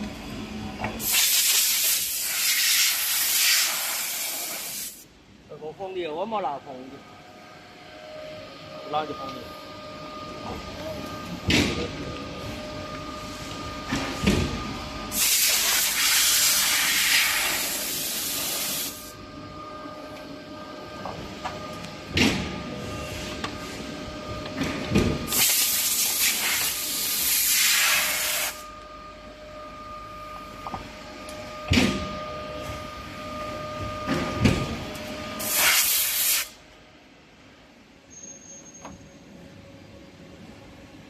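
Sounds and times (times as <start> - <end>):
loud hydraulic hisses: 1.0 - 5.0, 15.1 - 19.1, 25.3 - 28.6, 35.4 - 36.6.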